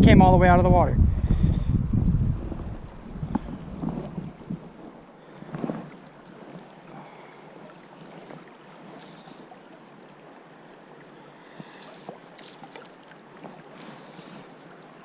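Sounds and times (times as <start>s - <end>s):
wind on microphone: 0.0s - 6.7s.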